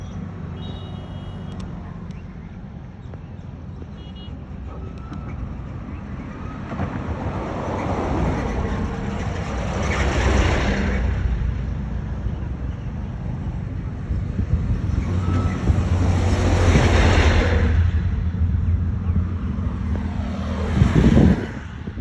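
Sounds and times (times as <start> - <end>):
road traffic engine rumble: 0.0 - 22.0
vehicle approaching: 4.6 - 22.0.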